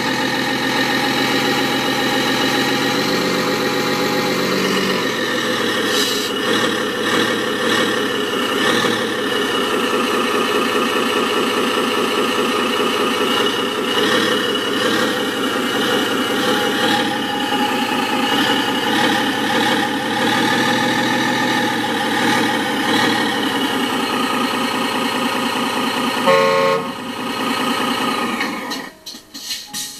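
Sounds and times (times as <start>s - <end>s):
simulated engine running: 0.0s - 28.9s
short horn toot: 26.3s - 27.0s.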